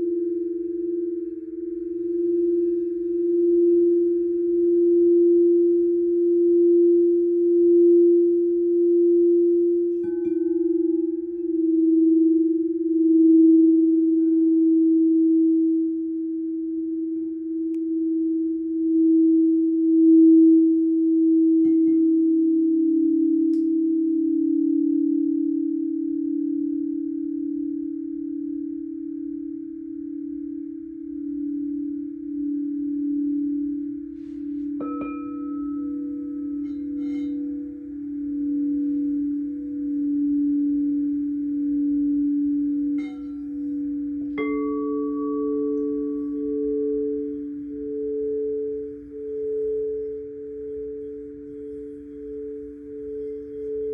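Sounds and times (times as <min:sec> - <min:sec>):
singing bowl low tone: 0:00.0 - 0:53.9
singing bowls struck ringing: 0:09.1 - 0:12.8, 0:31.0 - 0:53.9.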